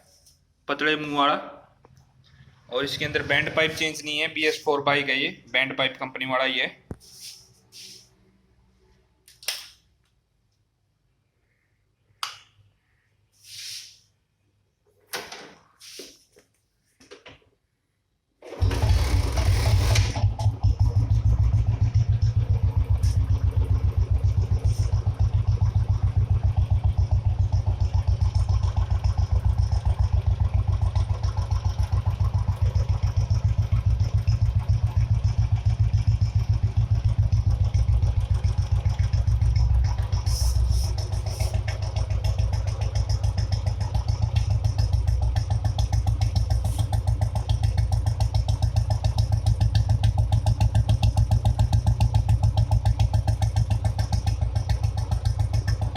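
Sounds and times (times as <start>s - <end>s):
motorcycle engine running: 18.6s - 55.9s.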